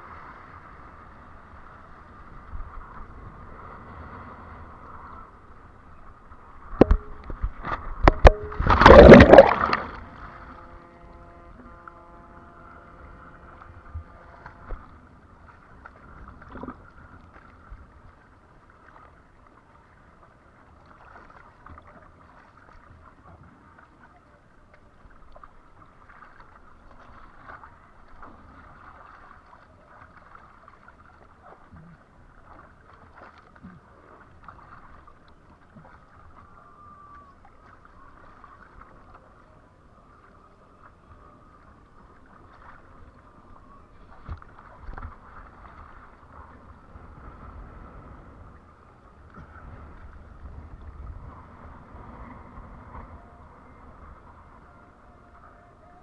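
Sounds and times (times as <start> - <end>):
faint hum: 0.0 - 17.2
wind: 0.0 - 56.0
water splashing against board: 6.5 - 10.6.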